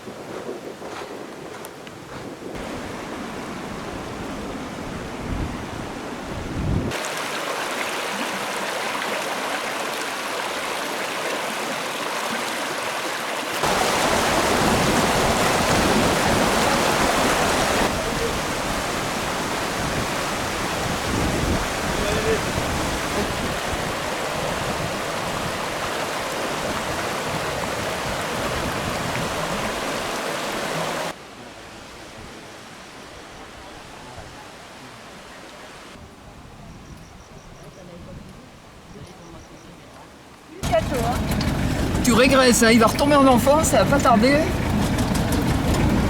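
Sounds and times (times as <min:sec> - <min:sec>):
steady rushing noise: 0:40.6 - 0:46.0.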